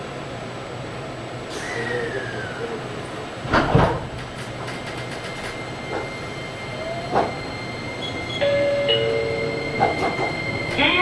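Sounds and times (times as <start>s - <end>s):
train running rumble: 0.6s - 11.0s
wheel clacks on rail: 3.6s - 6.2s, 8.8s - 11.0s
electric traction drive whine: 5.3s - 11.0s.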